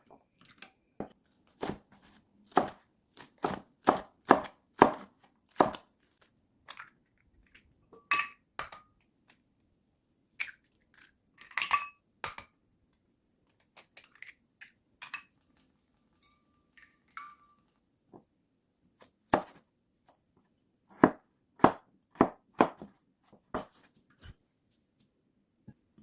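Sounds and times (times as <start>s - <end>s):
knife chopping on cutting board: 2.5s - 2.8s, 3.4s - 5.8s, 20.9s - 22.9s.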